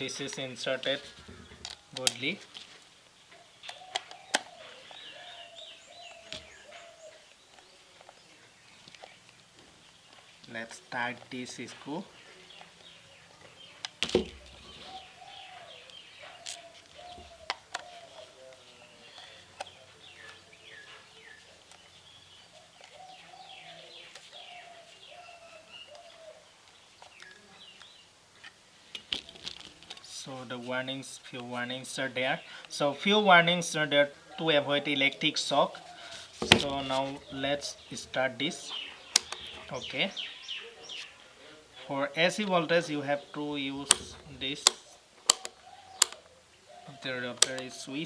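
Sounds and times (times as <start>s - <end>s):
bird calling: 3.2s - 10.3s, 12.3s - 27.9s, 35.5s - 41.9s, 43.1s - 48.0s
sharp click: 36.4s - 36.9s, 39.2s - 39.5s, 43.9s - 46.3s, 47.4s - 47.7s.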